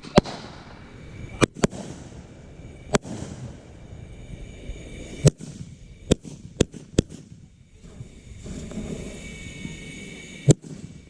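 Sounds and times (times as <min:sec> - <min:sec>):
fireworks bangs: 0:00.0 - 0:04.0, 0:05.2 - 0:07.6, 0:10.4 - 0:11.0.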